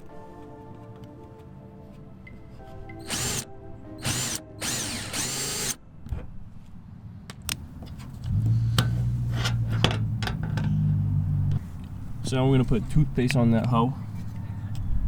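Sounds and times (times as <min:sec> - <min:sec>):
power drill: 0:03.0 - 0:03.4, 0:04.0 - 0:05.8.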